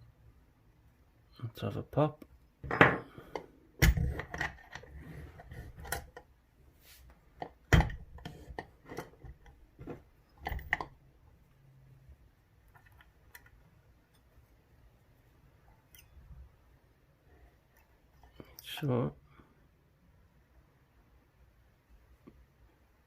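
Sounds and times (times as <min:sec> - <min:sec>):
lock picks clicking and scraping: 0:03.3 - 0:06.3, 0:07.4 - 0:11.0.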